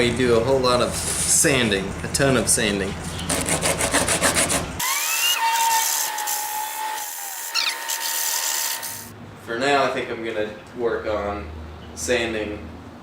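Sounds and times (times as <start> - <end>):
sandpaper rubbing on wood: 3.3 - 4.7.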